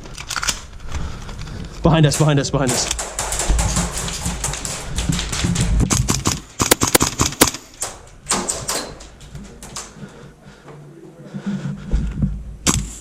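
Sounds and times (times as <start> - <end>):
rapid airsoft gunfire: 2.2 - 7.7.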